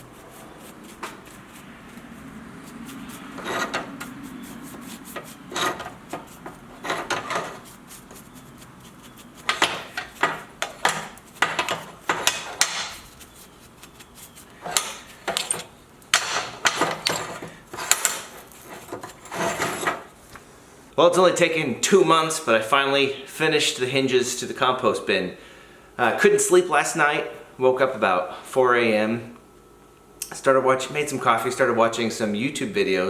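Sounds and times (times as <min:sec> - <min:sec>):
metal rubbing: 0:00.0 - 0:20.2
metal clinks and knocks: 0:14.6 - 0:20.1.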